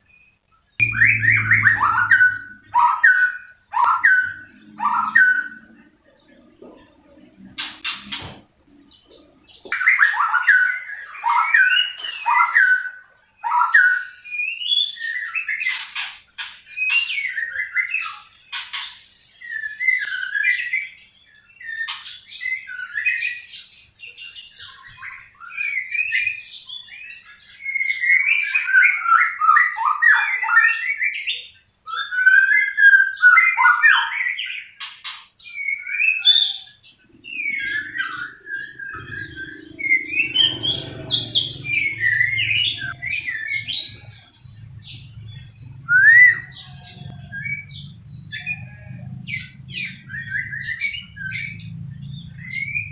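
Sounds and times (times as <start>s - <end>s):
bird singing whistled phrases: 24.5s - 34.8s, 35.4s - 40.7s, 45.8s - 48.8s.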